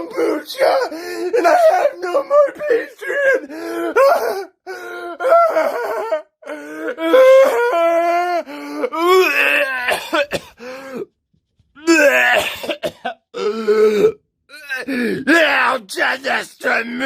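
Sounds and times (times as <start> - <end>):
person wailing and groaning: 0.0 - 10.2, 11.8 - 12.8, 13.4 - 15.5.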